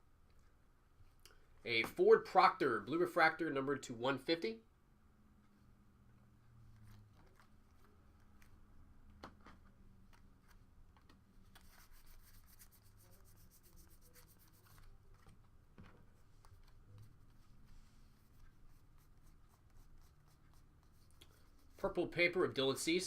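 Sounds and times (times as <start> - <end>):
trading cards rubbing and flicking: 6.7 - 8.6, 11.4 - 15.4, 16.1 - 22.4.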